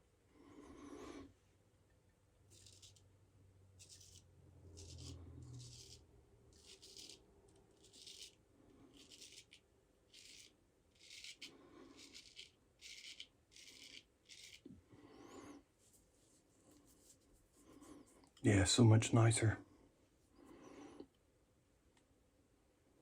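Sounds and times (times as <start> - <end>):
razor scraping stubble: 2.5 - 3.0, 3.8 - 14.6.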